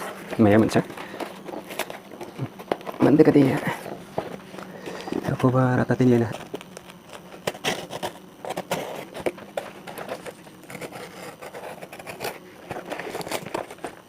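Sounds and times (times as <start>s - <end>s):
packaging scraping and clicking: 0.0s - 14.0s.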